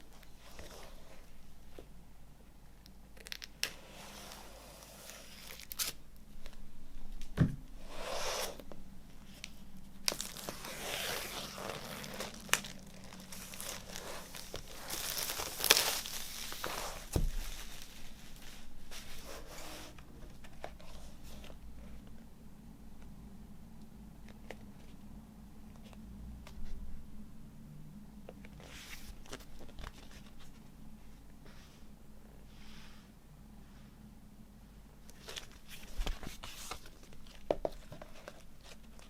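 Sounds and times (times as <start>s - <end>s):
packaging tearing and rustling: 5.0s - 6.0s, 10.0s - 19.6s.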